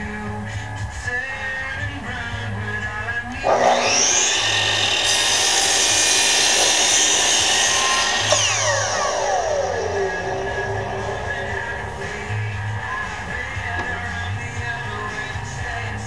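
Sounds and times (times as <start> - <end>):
background music: 0.0 - 16.0
saw blade cutting fibreboard: 3.4 - 12.4
miter saw motor whining: 3.4 - 12.9.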